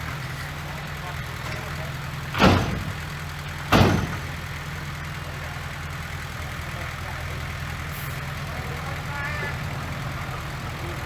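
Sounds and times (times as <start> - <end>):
diesel engine idling: 0.0 - 11.0
loud bangs: 2.3 - 4.5.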